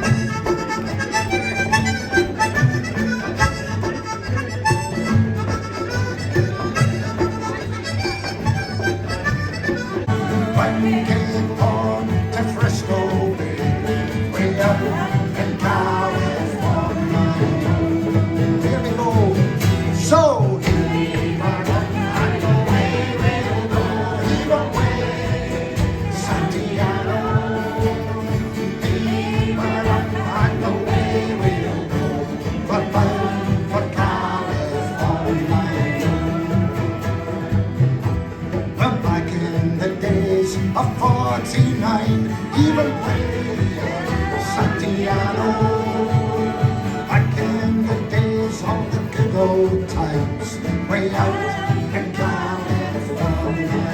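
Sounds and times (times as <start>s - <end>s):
harmonica melody: 0.0s - 39.3s
folk band playing: 0.0s - 53.9s.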